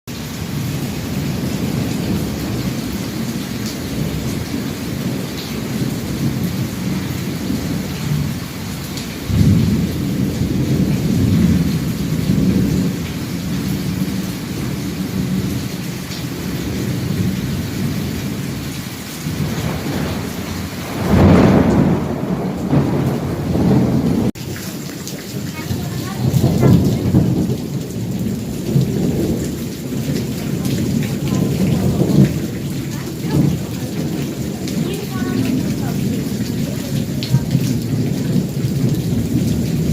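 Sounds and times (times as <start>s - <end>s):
heavy rain: 0.1s - 39.9s
low rolling thunder: 0.2s - 39.9s
sharp thunder clap: 9.2s - 24.4s, 25.6s - 39.9s.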